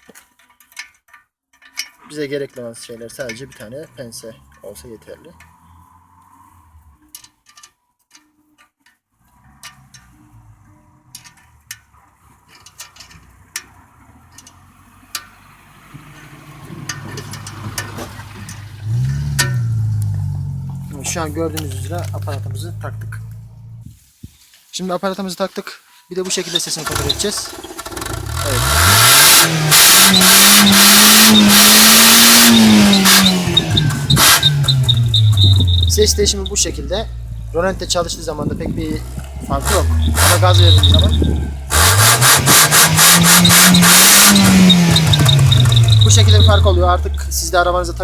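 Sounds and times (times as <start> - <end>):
car engine idling: 3.0 - 7.2, 9.4 - 24.0, 26.2 - 48.0
metal clicks and taps: 11.1 - 11.8
engine revving down with whistle: 26.9 - 38.0, 39.1 - 47.5.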